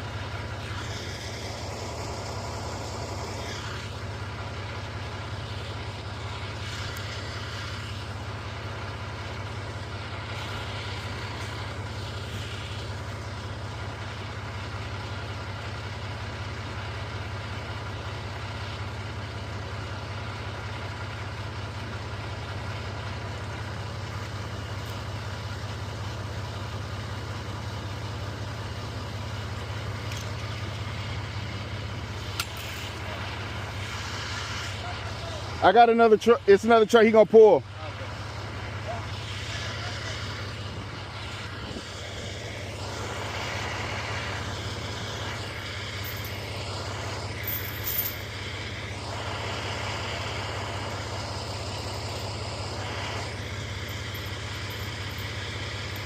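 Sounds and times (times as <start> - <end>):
diesel truck engine running: 0.0 - 56.0.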